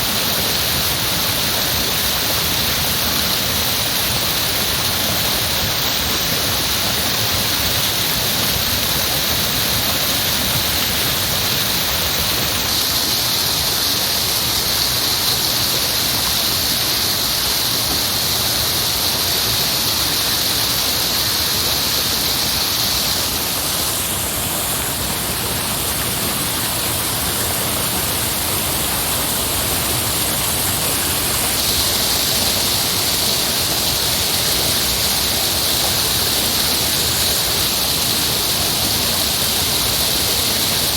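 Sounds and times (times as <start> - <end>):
heavy rushing water: 0.0 - 40.9.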